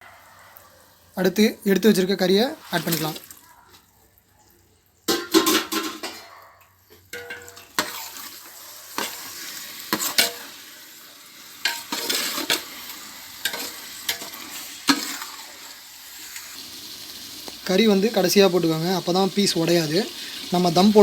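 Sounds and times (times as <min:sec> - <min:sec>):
sizzling in a pot: 0:00.0 - 0:21.0
spoon scraping and knocking pot: 0:05.1 - 0:06.4, 0:07.0 - 0:08.4, 0:09.9 - 0:10.5, 0:11.6 - 0:12.7, 0:13.4 - 0:15.4.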